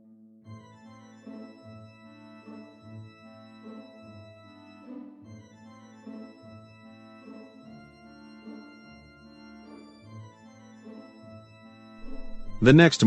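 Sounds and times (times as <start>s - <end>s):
slow bass line: 12.0s - 12.9s
organ chords: 12.0s - 13.0s.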